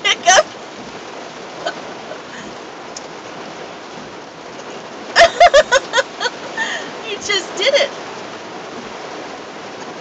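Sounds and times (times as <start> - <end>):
high-pitched laughter: 5.2 - 6.4.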